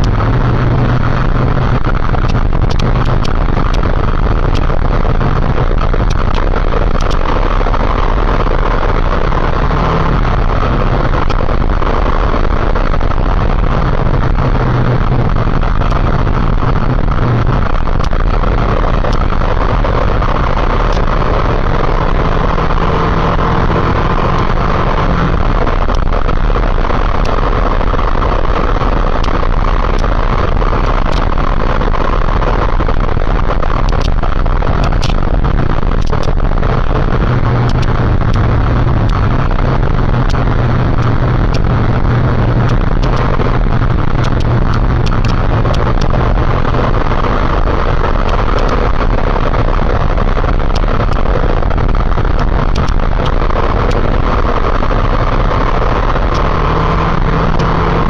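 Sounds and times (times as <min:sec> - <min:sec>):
motorcycle engine running: 0:00.0 - 0:58.0
steady rushing noise: 0:00.0 - 0:58.0.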